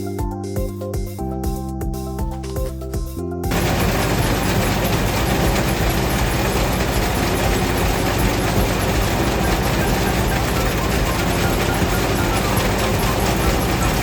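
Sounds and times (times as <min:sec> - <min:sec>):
music: 0:00.0 - 0:14.0
combine harvester clatter: 0:03.5 - 0:14.0.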